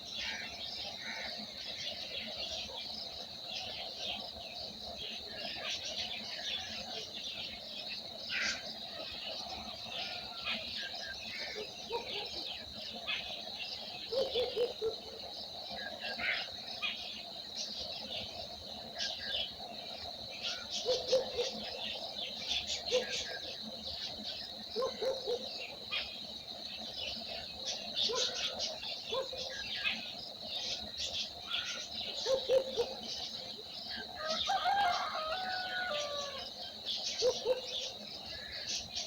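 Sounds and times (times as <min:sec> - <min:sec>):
small birds chirping: 0:00.0 - 0:39.0.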